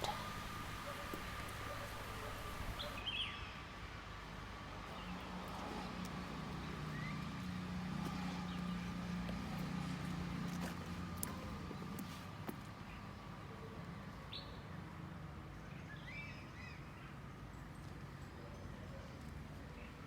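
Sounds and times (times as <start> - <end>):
steady low hum: 0.0 - 3.0
faint bird chirps: 0.0 - 3.4.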